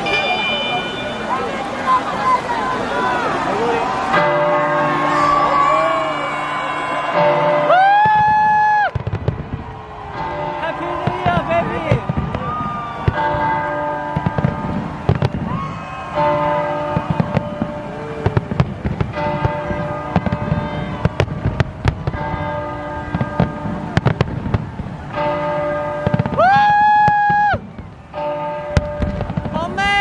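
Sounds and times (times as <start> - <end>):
bell-like chiming tones: 0.0 - 2.1
fireworks bangs and crackles: 5.1 - 30.0.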